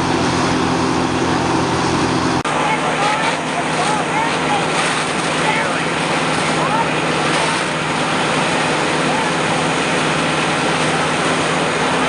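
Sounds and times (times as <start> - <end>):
engine idling: 0.0 - 12.0
faint voices: 2.5 - 9.9.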